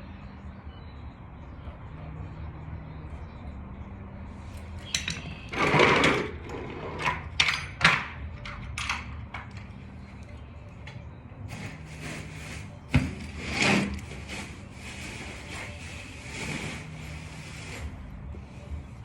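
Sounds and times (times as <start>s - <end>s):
tool scraping: 4.8s - 7.2s, 11.5s - 18.0s.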